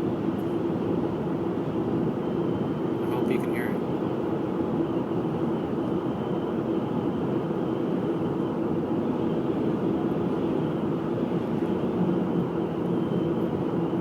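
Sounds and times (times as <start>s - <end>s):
road and wind noise: 0.0s - 14.0s
faint steady whistle: 4.8s - 14.0s.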